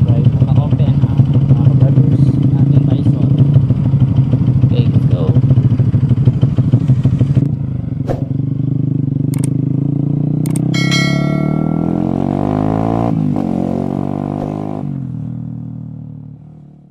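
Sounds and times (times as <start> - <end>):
vehicle engine accelerating: 6.4 - 16.8
sharp clicks: 9.3 - 9.6, 10.4 - 10.7.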